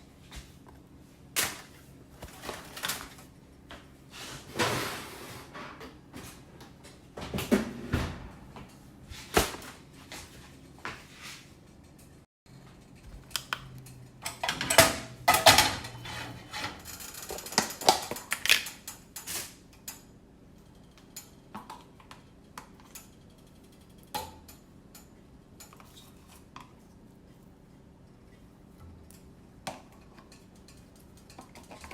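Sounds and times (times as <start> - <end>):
dishes and utensils clinking: 14.3 - 18.5.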